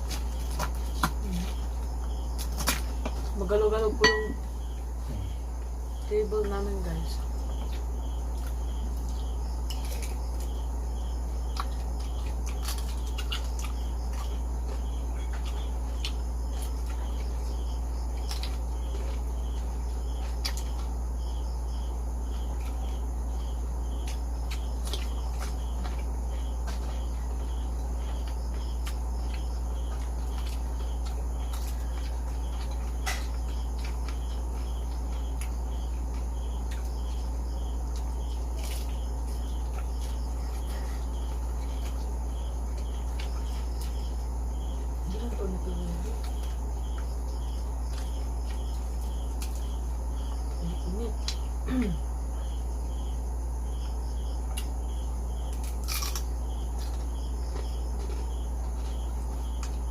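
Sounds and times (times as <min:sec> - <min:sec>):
constant low hum: 0:00.0 - 0:59.9
crickets chirping: 0:00.0 - 0:59.9
sharp clicks and crunches: 0:02.4 - 0:03.2, 0:11.4 - 0:17.1, 0:55.4 - 0:59.9.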